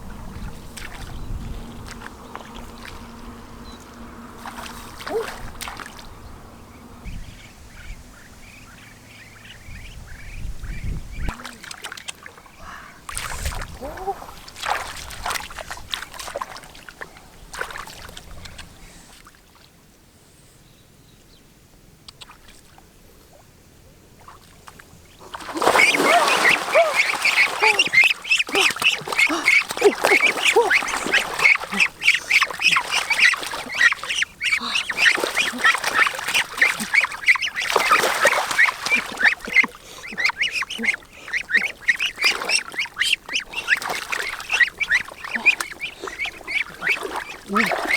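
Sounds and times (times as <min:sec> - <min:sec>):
flock of ducks quacking: 0:25.6 - 0:47.9.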